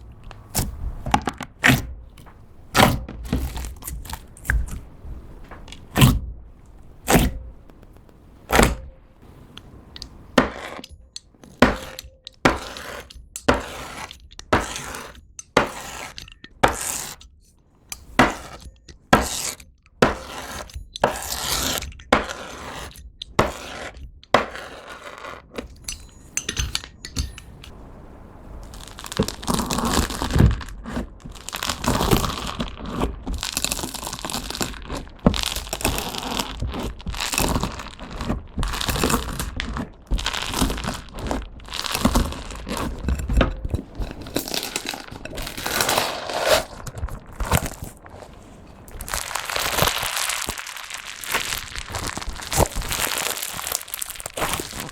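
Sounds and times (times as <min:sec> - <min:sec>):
dried slime crackling and crunching: 0:00.0 - 0:09.2, 0:28.5 - 0:54.9.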